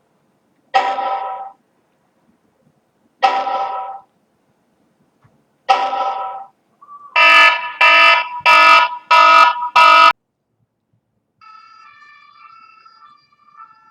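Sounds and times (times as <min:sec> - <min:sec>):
electronic alarm beeping: 0:05.8 - 0:10.2.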